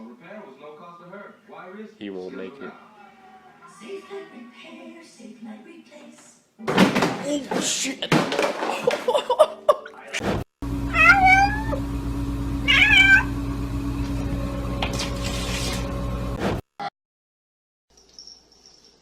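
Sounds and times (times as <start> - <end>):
cat meowing: 10.9 - 11.8, 12.6 - 13.3.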